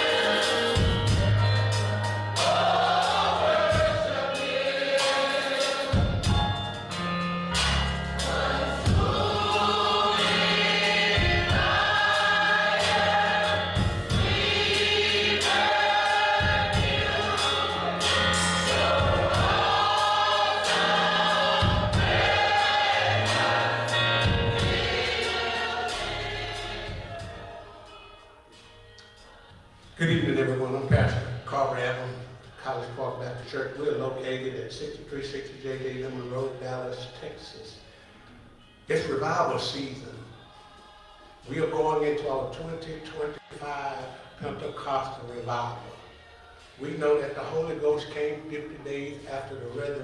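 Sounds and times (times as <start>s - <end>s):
bass: 0.0s - 4.3s, 5.9s - 15.8s, 16.4s - 29.3s
drums: 0.0s - 27.6s
gospel choir singing: 0.0s - 34.6s, 38.9s - 50.0s
keyboard: 0.0s - 50.0s.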